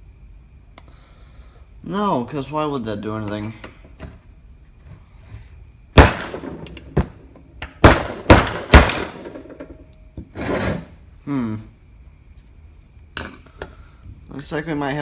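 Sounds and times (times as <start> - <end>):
hammer striking metal casing: 7.9 - 9.4.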